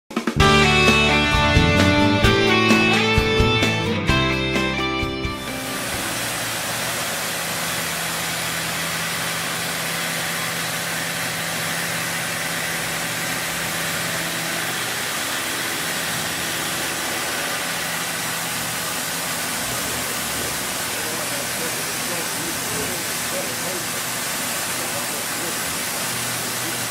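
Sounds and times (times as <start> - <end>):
machine hiss: 5.4 - 26.9.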